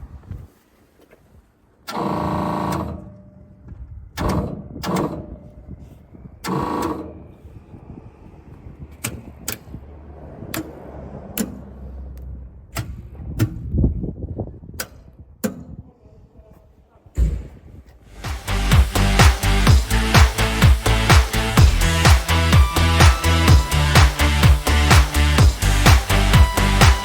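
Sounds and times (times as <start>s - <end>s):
loud pitched buzzing blasts: 18.1s - 27.0s.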